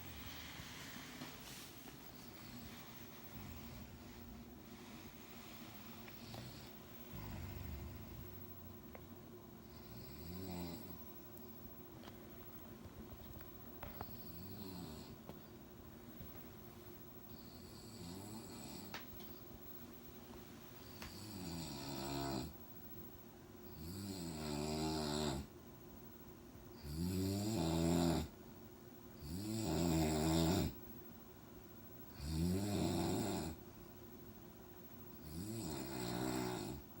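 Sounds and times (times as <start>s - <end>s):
man snoring: 6.2s - 8.5s, 9.8s - 11.0s, 14.2s - 15.2s, 17.6s - 18.9s, 21.1s - 22.5s, 23.8s - 25.5s, 26.8s - 28.3s, 29.2s - 30.8s, 32.1s - 33.6s, 35.2s - 36.8s.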